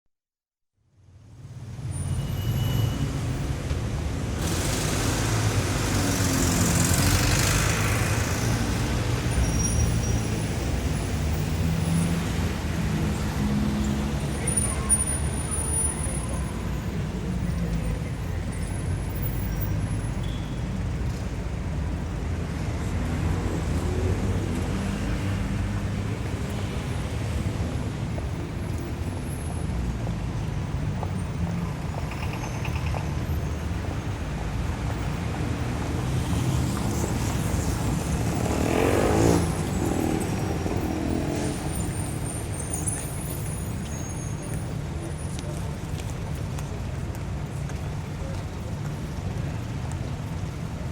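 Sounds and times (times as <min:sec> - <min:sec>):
traffic rumble: 0:01.1 - 0:50.9
vehicle passing: 0:36.0 - 0:42.2.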